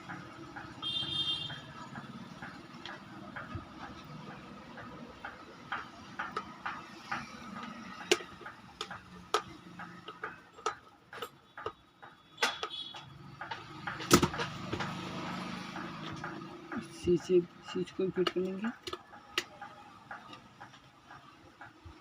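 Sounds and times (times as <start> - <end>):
small parts clicking and tapping: 0.0 - 22.0.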